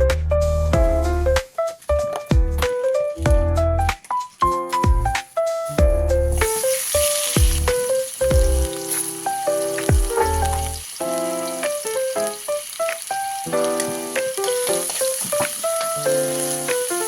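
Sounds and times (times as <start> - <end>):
background music with plucked bass: 0.0 - 8.8, 9.8 - 10.8
food sizzling in frying: 3.9 - 17.0.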